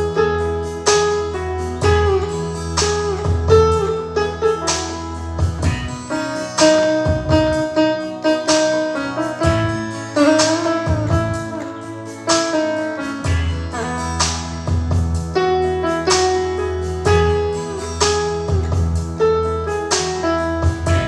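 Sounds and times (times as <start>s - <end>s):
guitar melody: 0.0s - 21.0s
pop ballad instrumental: 0.0s - 21.0s.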